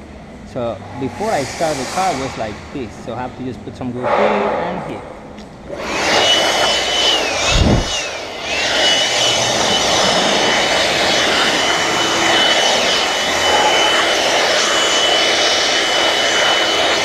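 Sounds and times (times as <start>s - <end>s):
small motor whining: 5.7s - 17.0s.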